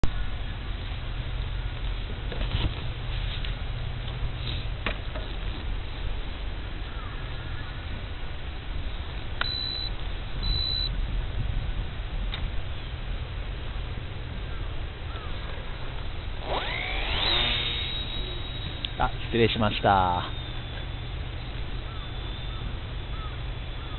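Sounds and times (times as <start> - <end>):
high electronic beeps: 9.4 - 10.9, 17.3 - 21.1.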